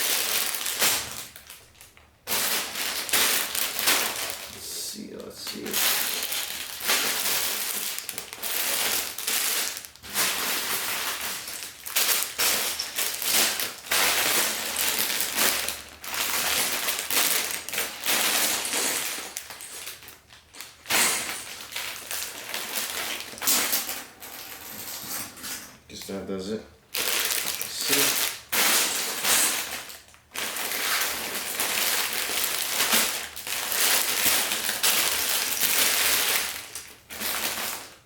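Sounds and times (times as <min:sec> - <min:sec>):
plastic bags crinkling: 0:00.0 - 0:26.2, 0:26.9 - 0:38.0
plastic bricks clattering: 0:05.8 - 0:25.0.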